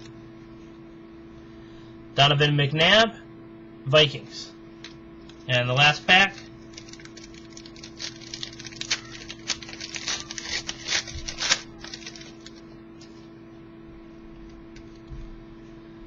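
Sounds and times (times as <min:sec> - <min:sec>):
steady hum: 0:00.0 - 0:16.0
wrapper tearing and crinkling: 0:06.4 - 0:12.7.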